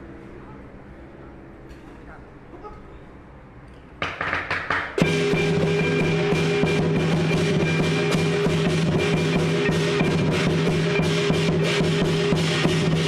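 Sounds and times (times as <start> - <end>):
drum and cymbal beat: 4.9 - 13.0
steady ringing tone: 5.0 - 12.5.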